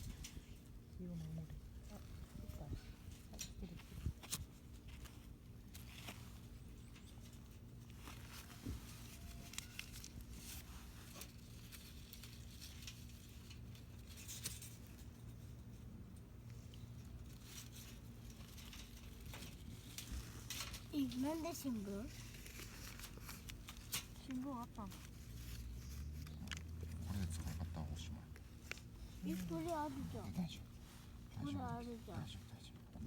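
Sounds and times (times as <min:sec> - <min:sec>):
hands rustling dry tinder: 0:16.4 - 0:27.4.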